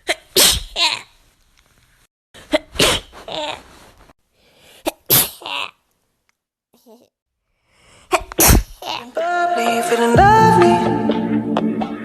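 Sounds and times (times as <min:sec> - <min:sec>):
person sneezing: 0:00.0 - 0:01.0, 0:02.4 - 0:03.7, 0:04.7 - 0:05.8, 0:08.1 - 0:09.0.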